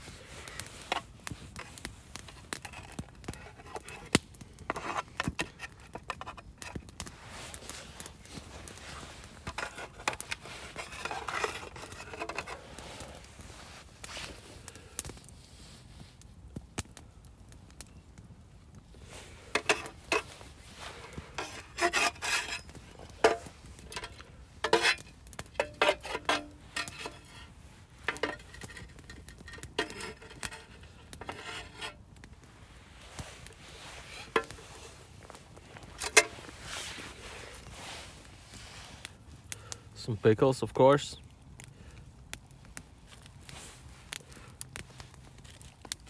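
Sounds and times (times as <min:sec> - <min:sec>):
utensils scraping and clinking cookware: 0:08.8 - 0:12.6, 0:19.2 - 0:32.0, 0:33.8 - 0:34.8, 0:35.8 - 0:36.5.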